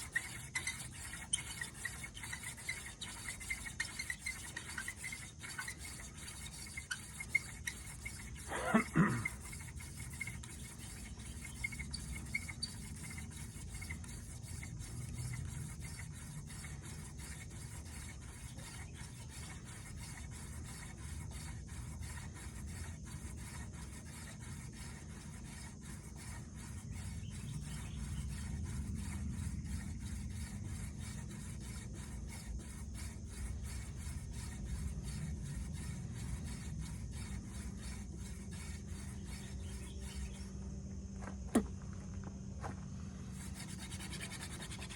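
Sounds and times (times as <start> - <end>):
hands rubbing a stalk: 43.4 - 44.9.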